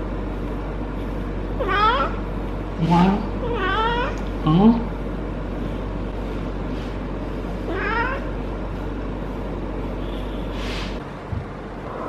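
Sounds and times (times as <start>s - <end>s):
steady low hum: 0.0s - 12.0s
cat yowling: 1.6s - 2.2s, 7.7s - 8.3s.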